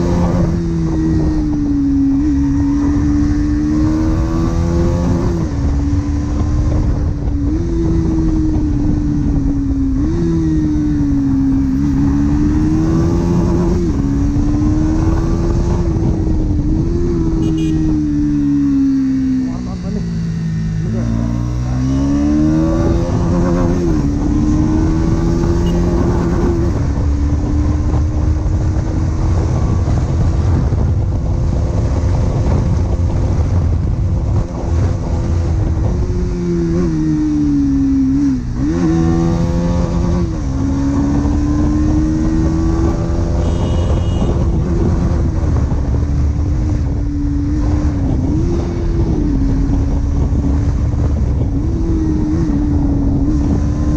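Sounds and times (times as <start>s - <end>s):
motorcycle engine cruising: 0.0s - 53.9s
wind and road rumble: 0.0s - 53.9s.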